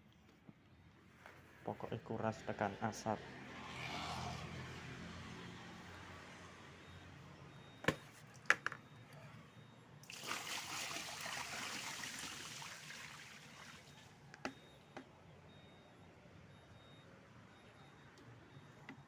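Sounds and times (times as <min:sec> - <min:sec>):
water splashing and pouring: 0:10.0 - 0:14.1.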